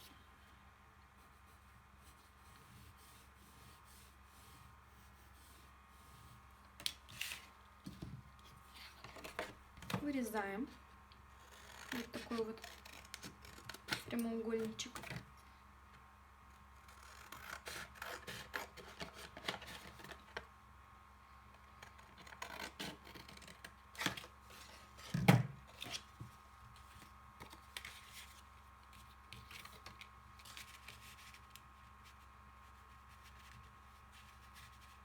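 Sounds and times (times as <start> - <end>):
scissors snipping paper: 11.4 - 15.2
paper rustling: 25.7 - 35.0.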